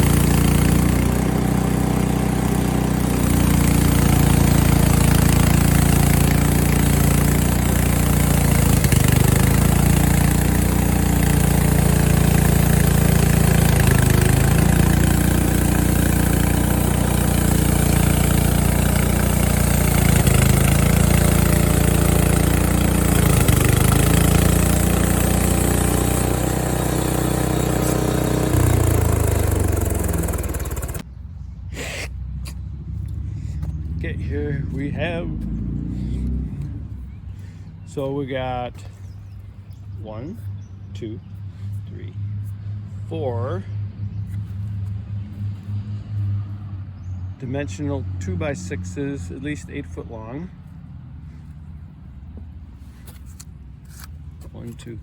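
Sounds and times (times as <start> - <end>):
sawmill engine sawing boards: 0.0 - 31.0.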